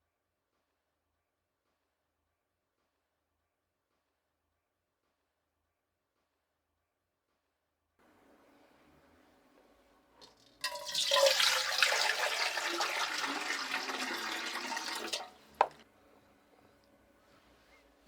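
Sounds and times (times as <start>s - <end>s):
water pouring: 10.2s - 15.8s.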